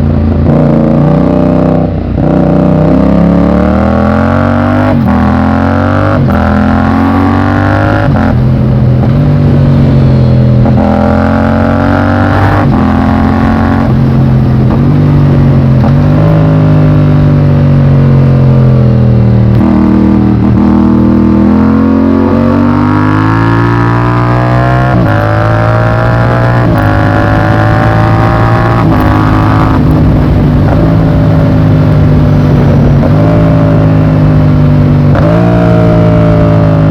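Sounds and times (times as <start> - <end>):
motorcycle engine revving: 0.0 - 36.9.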